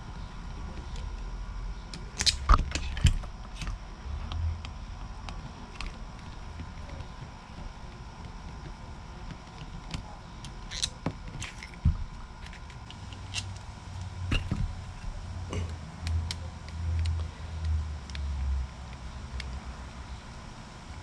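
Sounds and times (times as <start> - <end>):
small clicks and taps of parts: 1.9 - 20.1.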